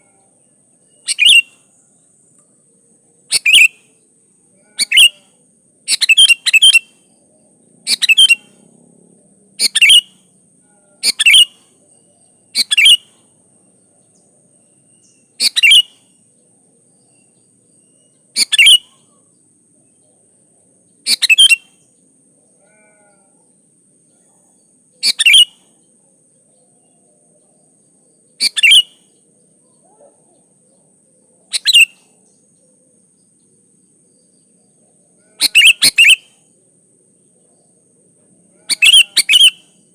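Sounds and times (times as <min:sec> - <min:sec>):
bulbul calling: 0:00.9 - 0:01.6, 0:03.3 - 0:03.8, 0:04.7 - 0:05.2, 0:05.9 - 0:06.9, 0:07.8 - 0:08.6, 0:09.6 - 0:10.2, 0:11.0 - 0:11.6, 0:12.5 - 0:13.2, 0:15.0 - 0:16.0, 0:18.4 - 0:19.0, 0:21.0 - 0:21.6, 0:28.4 - 0:29.0, 0:31.5 - 0:32.2, 0:35.4 - 0:36.4, 0:38.7 - 0:39.7.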